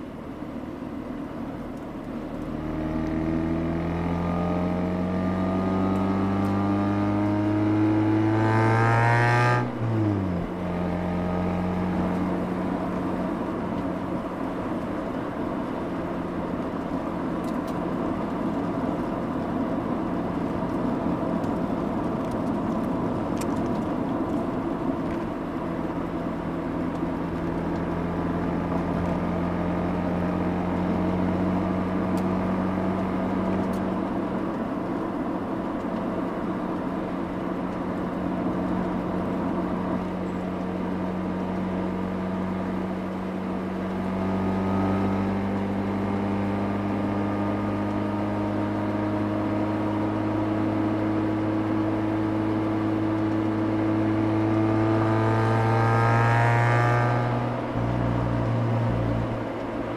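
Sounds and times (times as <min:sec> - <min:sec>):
rotary engine exhaust: 0:00.0 - 0:59.9
tyre and road noise: 0:00.0 - 0:59.9.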